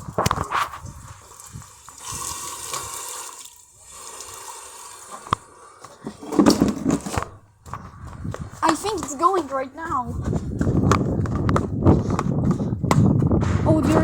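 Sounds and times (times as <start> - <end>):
water running from tap: 0.8 - 5.4.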